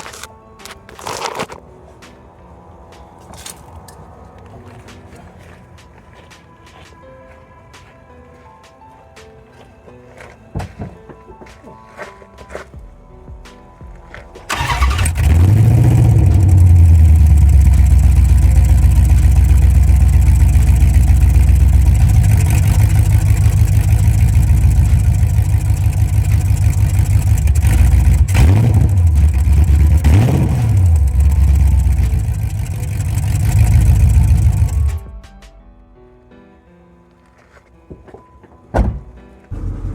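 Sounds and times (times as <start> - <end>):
car engine revving: 14.5 - 35.1, 39.5 - 39.9.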